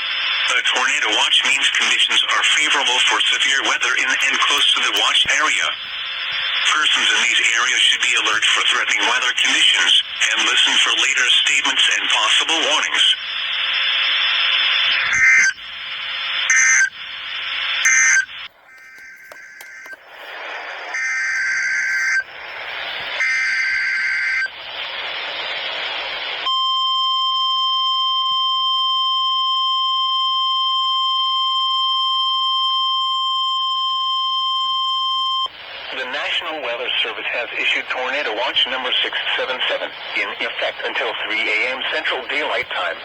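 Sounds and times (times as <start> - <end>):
radio hiss: 0.0 - 26.5, 35.4 - 43.0.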